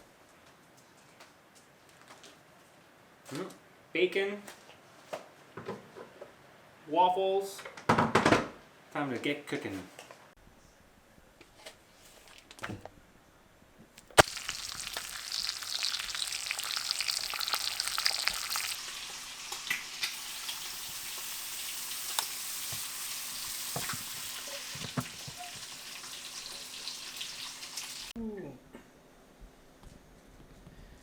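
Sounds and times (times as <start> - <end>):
bacon sizzling in a pan: 14.0 - 28.2.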